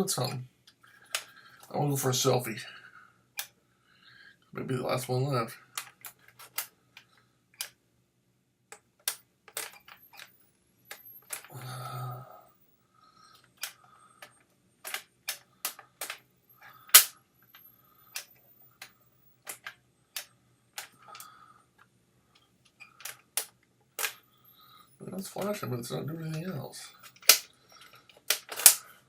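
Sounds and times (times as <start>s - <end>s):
camera shutter clicks: 16.9s - 17.1s, 28.3s - 28.8s.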